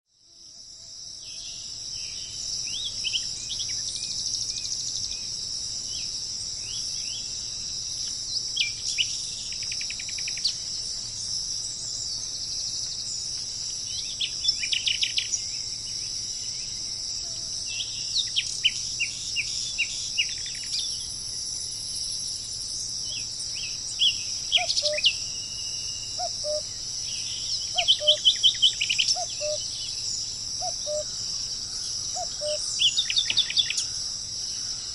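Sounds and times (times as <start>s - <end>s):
insects chorus: 0.1s - 34.9s
songbirds trilling: 1.3s - 34.9s
low soft bird call: 23.1s - 25.2s, 25.8s - 29.8s.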